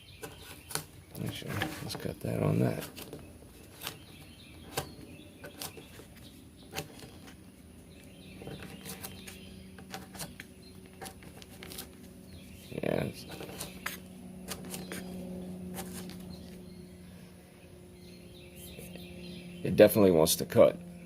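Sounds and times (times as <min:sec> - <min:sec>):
crisp clicks and rustles: 0:02.7 - 0:12.2, 0:13.2 - 0:16.6.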